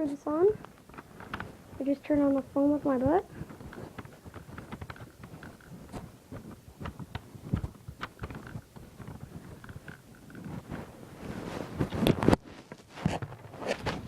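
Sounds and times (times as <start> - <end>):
plastic rifle clicks and scrapes: 3.4 - 10.8.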